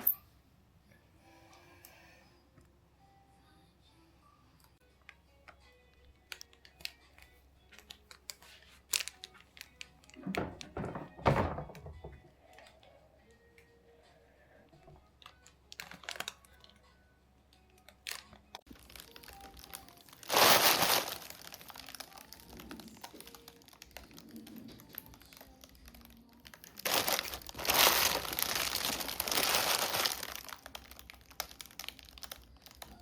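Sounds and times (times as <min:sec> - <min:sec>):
crinkling rustling: 0:18.1 - 0:33.0.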